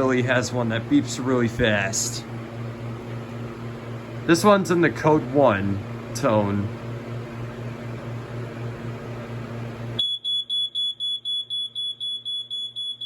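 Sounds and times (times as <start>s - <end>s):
pulsing low hum and hiss: 0.0s - 13.0s
smoke alarm beeping rapidly: 10.0s - 13.0s.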